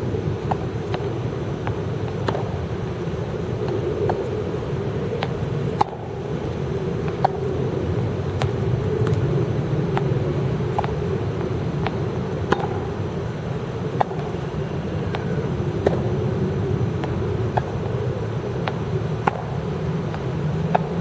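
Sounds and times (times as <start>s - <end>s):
low background rumble: 0.0s - 21.0s
tennis balls bouncing on court: 0.4s - 2.9s, 3.6s - 4.3s, 5.2s - 6.2s, 7.0s - 7.7s, 8.3s - 13.2s, 13.8s - 16.2s, 16.9s - 21.0s
tennis balls hit with racket: 0.4s - 2.9s, 3.6s - 4.3s, 5.2s - 6.2s, 7.0s - 7.7s, 8.3s - 16.1s, 17.0s - 21.0s.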